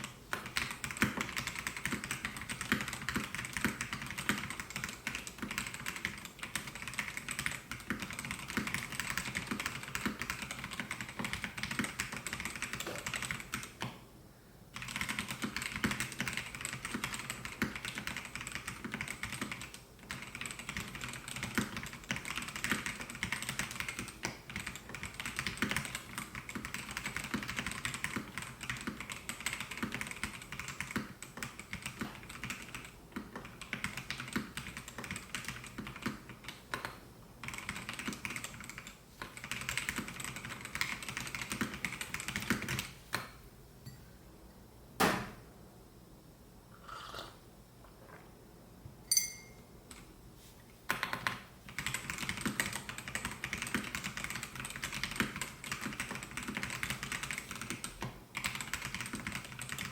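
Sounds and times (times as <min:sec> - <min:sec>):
mechanical keyboard typing: 0:00.0 - 0:13.9, 0:14.8 - 0:42.9, 0:50.9 - 0:59.9.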